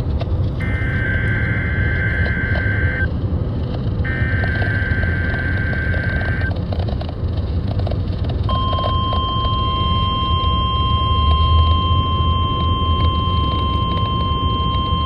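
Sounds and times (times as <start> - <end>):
low hum: 0.0 - 15.0
digital header tones: 0.6 - 3.1, 4.0 - 6.6, 8.5 - 15.0
steady warning alarm tone: 0.6 - 3.1, 4.0 - 6.5, 8.5 - 15.0.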